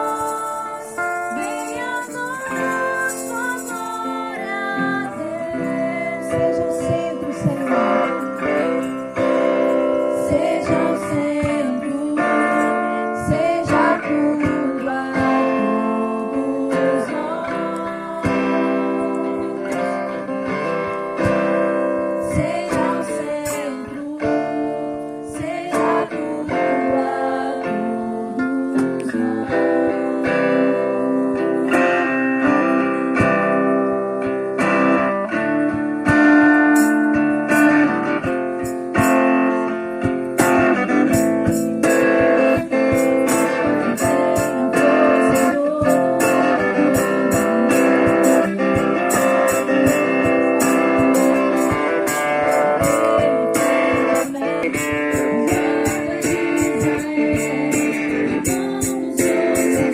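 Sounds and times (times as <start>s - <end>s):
guitar: 0.0s - 59.9s
people singing worship song: 10.0s - 18.7s, 22.0s - 32.9s, 42.6s - 50.0s, 51.6s - 59.9s.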